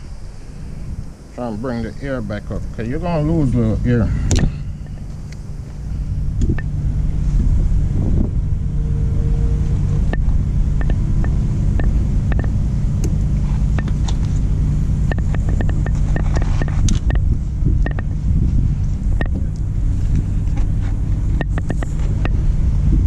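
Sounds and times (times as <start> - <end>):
engine idling: 0.0 - 23.0
sharp clicks and taps: 10.1 - 14.2, 15.1 - 18.1, 19.2 - 19.7, 21.4 - 22.4.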